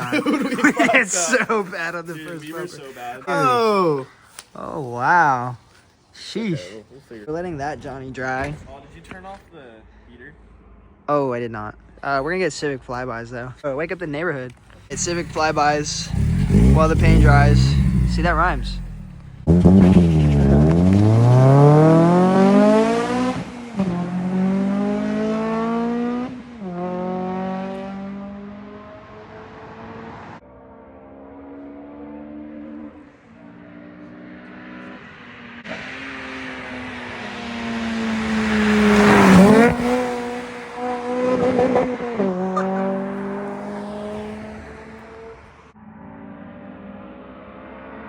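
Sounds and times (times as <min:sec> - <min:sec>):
car engine accelerating past: 0:14.9 - 0:48.0.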